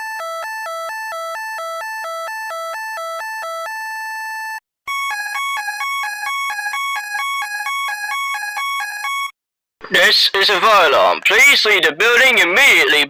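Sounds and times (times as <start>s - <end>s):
electronic fire alarm sounder: 0.0s - 9.4s.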